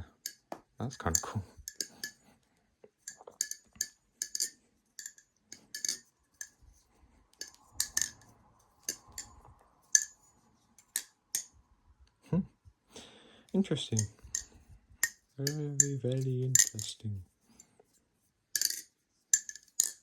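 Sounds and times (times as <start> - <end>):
butterfly knife clicking and clacking: 1.1 - 2.2, 3.1 - 6.6, 7.4 - 8.2.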